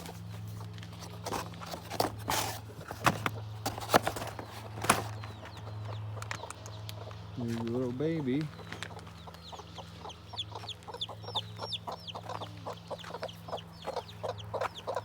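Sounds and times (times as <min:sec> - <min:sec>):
footsteps and scuffing: 0:00.0 - 0:05.7, 0:06.3 - 0:11.6.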